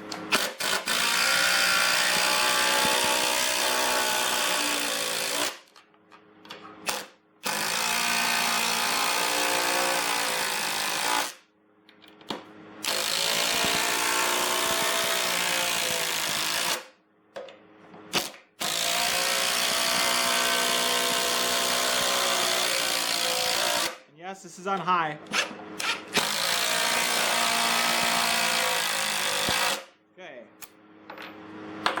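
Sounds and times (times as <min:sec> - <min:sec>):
impact driver hammering screws: 0:00.1 - 0:05.8, 0:06.8 - 0:11.4, 0:12.8 - 0:16.9, 0:18.1 - 0:24.0, 0:25.3 - 0:29.9.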